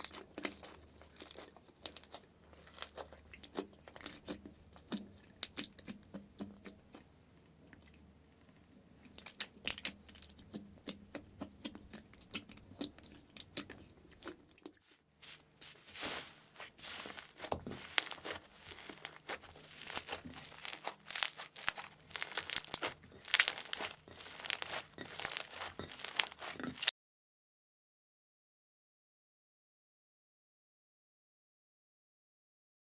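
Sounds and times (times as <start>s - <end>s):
slime crackling and popping: 16.0s - 26.9s.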